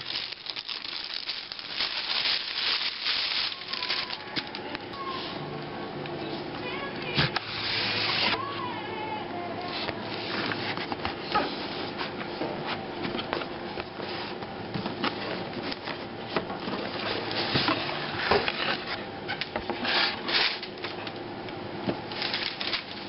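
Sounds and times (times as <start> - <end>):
cardboard and plastic rustling: 0.0 - 4.8, 9.6 - 21.0, 21.9 - 23.0.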